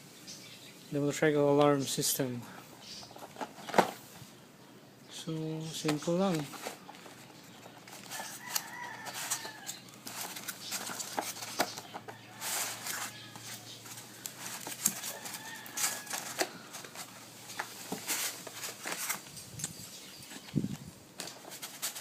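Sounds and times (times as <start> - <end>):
packaging rustling and clicking: 3.0 - 4.1, 5.7 - 22.0.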